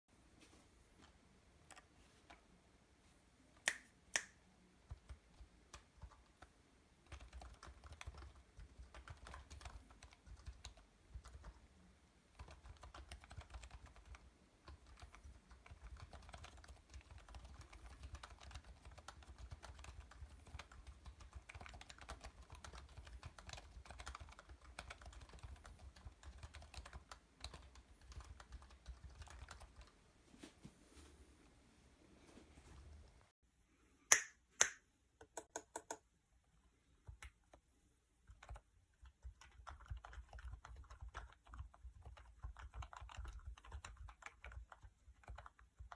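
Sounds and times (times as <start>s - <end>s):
finger snaps: 3.6s - 4.4s
keyboard typing: 4.9s - 11.6s, 12.3s - 29.9s, 35.2s - 36.0s, 38.3s - 45.9s.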